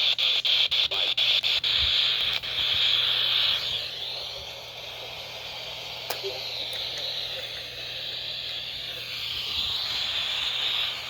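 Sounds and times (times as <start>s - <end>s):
radio static: 0.0s - 3.8s.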